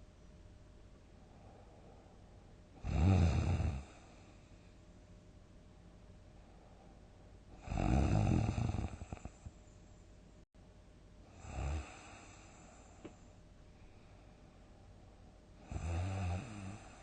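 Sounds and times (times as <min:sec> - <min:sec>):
person snoring: 0:02.8 - 0:04.2, 0:07.6 - 0:09.5, 0:11.3 - 0:12.6, 0:15.6 - 0:17.0.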